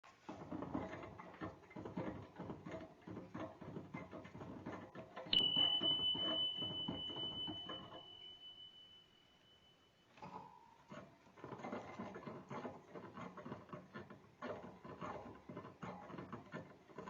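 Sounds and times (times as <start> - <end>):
high-pitched beep tone: 5.4 - 9.6.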